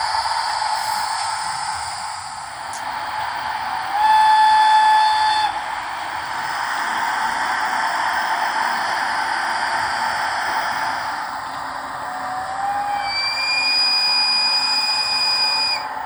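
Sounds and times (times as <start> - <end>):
model locomotive hissing: 0.0 - 16.0
locomotive whistle blast: 3.9 - 5.6, 12.2 - 15.9.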